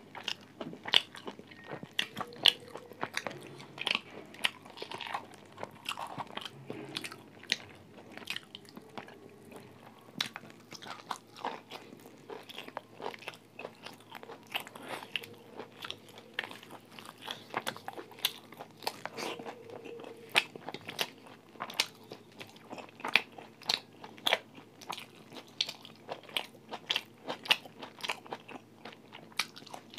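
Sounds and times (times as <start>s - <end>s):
chewing and crunching food: 0.0s - 29.9s.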